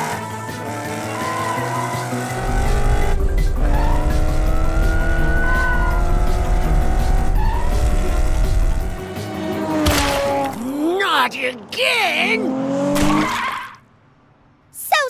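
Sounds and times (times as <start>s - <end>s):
tyres squealing: 0.0s - 8.9s
background music: 0.0s - 12.6s
cartoon race car engine: 0.0s - 13.8s.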